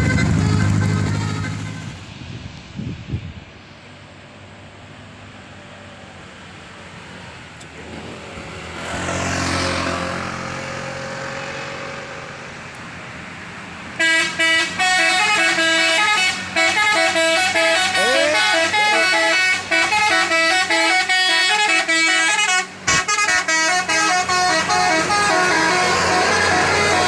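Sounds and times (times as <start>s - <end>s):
multi-tone bus horn: 0.0s - 2.0s, 13.9s - 27.0s
bus passing by: 0.0s - 27.0s.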